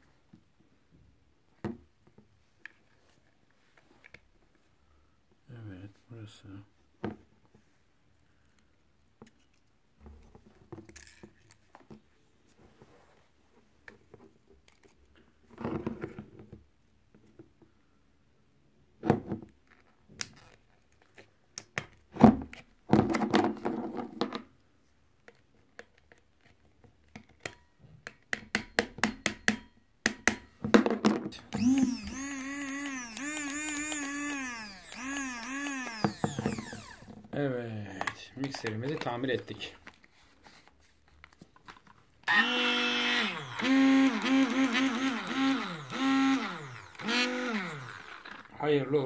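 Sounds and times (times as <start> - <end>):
hand blender motor whining: 31.5 - 37.2, 42.2 - 48.6.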